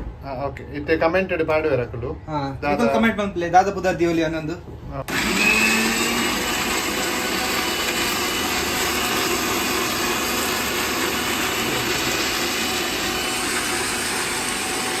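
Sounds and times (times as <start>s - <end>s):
kitchen machine motor running: 5.1s - 15.0s.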